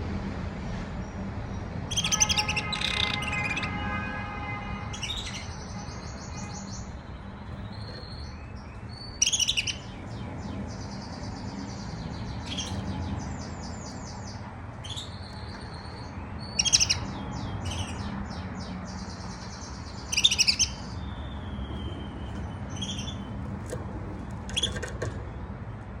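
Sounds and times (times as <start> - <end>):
canary singing warbles and trills: 1.2 - 25.6.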